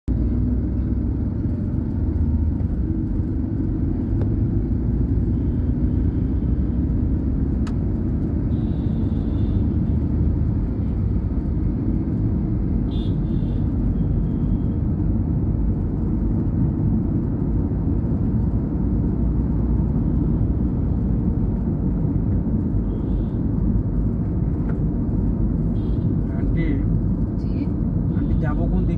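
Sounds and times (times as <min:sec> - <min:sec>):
road traffic rumble: 0:00.0 - 0:28.9.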